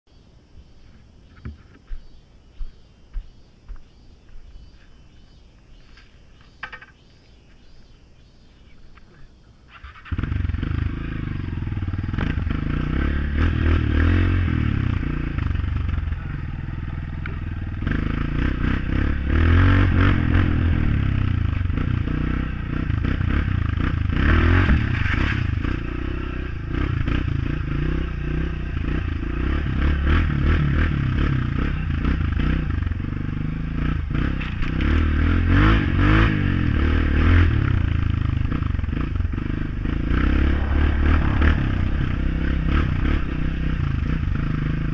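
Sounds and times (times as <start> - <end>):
dirt bike engine revving: 9.8 - 44.9.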